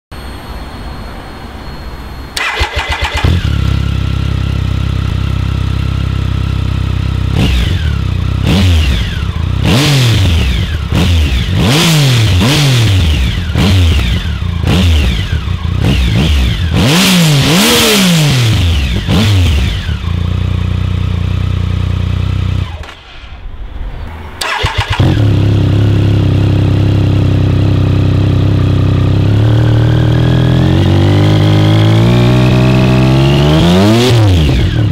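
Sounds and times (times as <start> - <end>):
engine revving blips: 0.1 - 34.9
motorcycle engine idling: 2.4 - 11.7, 18.6 - 22.8.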